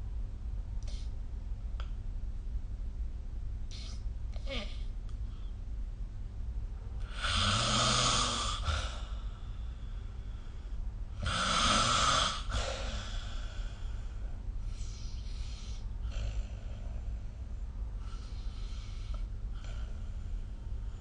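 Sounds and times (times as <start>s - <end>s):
person snoring: 7.1s - 9.2s, 11.2s - 13.4s.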